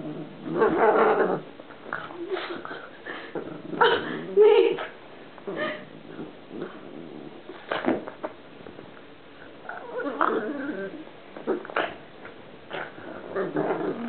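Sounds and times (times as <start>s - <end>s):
pug making strange noises: 9.7s - 12.0s, 12.7s - 14.0s.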